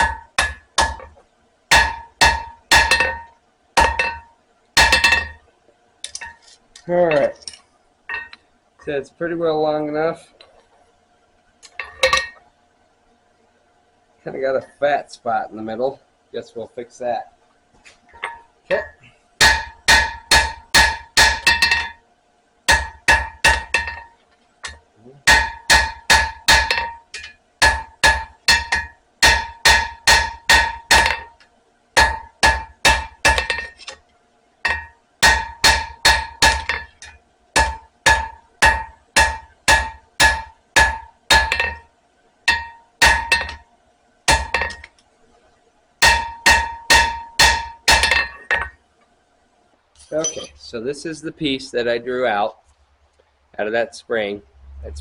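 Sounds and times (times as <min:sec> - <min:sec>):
hammer striking steel on anvil: 0:00.0 - 0:05.4, 0:19.4 - 0:22.0, 0:22.7 - 0:31.4, 0:32.0 - 0:33.8, 0:34.7 - 0:41.9, 0:42.5 - 0:43.6, 0:44.3 - 0:44.9, 0:46.0 - 0:48.8, 0:50.1 - 0:50.5.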